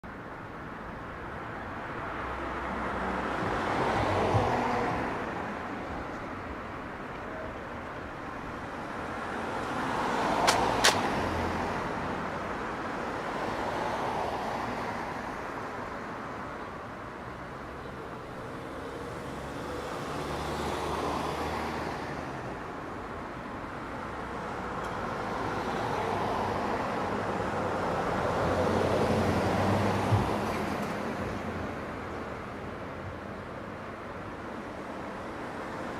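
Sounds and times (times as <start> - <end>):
cars passing: 0.1 - 35.9
sharp clicks: 10.4 - 11.2.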